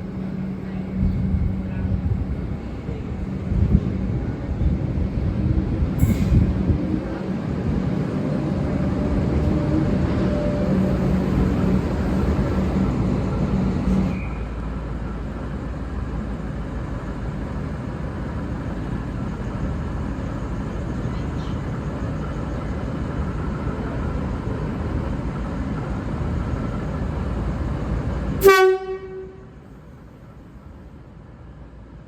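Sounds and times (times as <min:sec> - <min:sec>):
diesel railcar rumbling: 0:00.0 - 0:32.0
train horn blast: 0:28.4 - 0:29.6.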